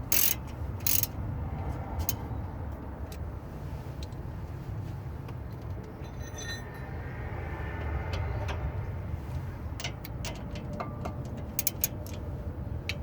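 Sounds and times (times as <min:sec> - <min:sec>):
metal tools clinking: 0:06.0 - 0:06.9.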